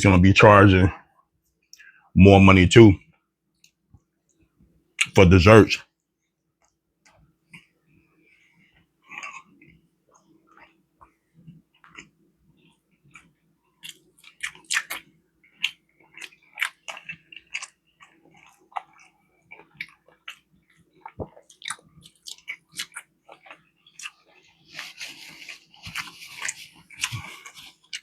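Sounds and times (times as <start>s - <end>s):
person chewing food: 6.2s - 28.0s.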